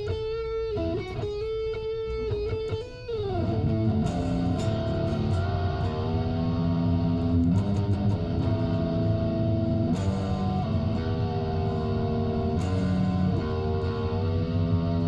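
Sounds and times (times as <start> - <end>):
electric guitar chords: 0.0 - 15.0.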